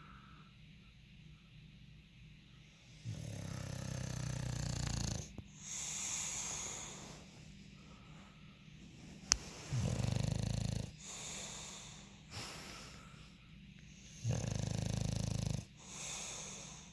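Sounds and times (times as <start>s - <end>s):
soft wheezy breaths: 0.0s - 16.9s
dog snoring: 3.0s - 7.4s, 9.3s - 13.2s, 13.9s - 16.9s.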